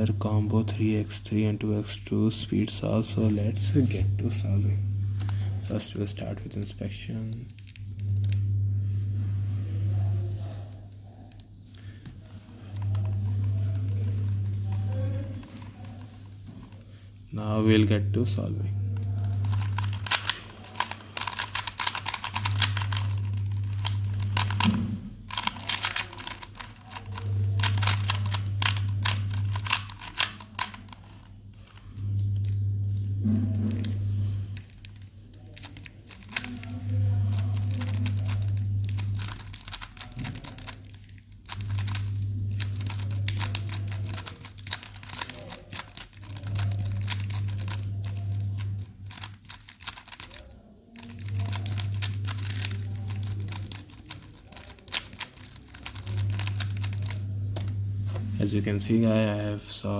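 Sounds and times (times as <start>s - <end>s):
low hum: 2.8s - 59.0s
plastic puzzle cube clicking: 19.4s - 24.7s, 25.3s - 31.8s, 34.6s - 57.7s.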